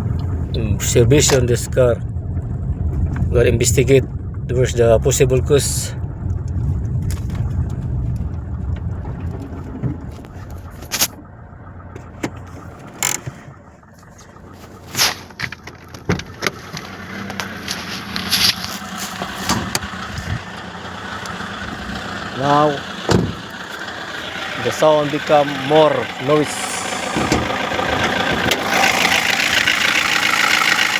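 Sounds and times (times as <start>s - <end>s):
car engine running: 0.0s - 30.9s
sharp engine knocks: 19.2s - 30.9s.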